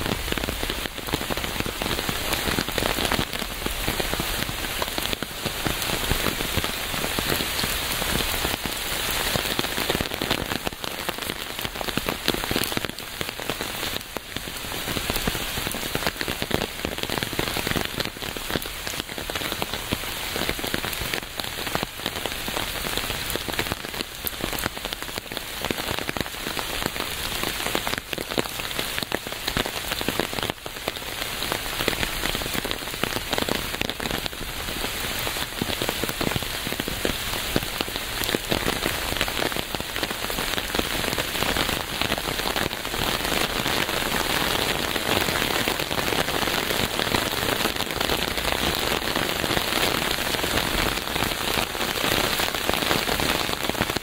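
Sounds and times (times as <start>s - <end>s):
steady rain patter: 0.0s - 54.0s.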